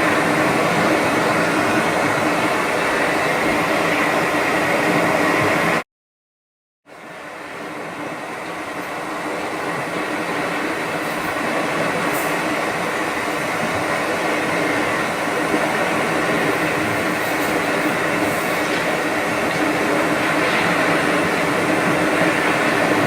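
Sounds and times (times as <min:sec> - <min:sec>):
droning hum with rushing noise: 0:06.9 - 0:23.0.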